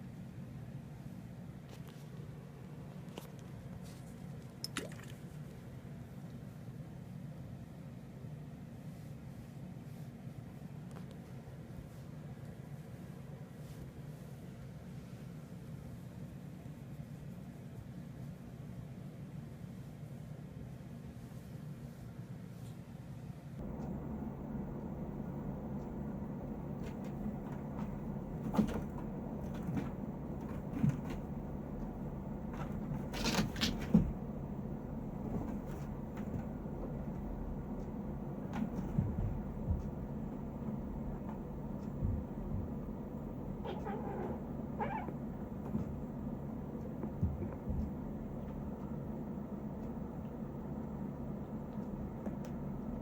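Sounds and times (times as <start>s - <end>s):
low steady hum: 0.0s - 53.0s
cats knocking and rustling: 23.6s - 49.3s
cats scuffling: 23.6s - 53.0s
cat mewing: 43.6s - 45.2s.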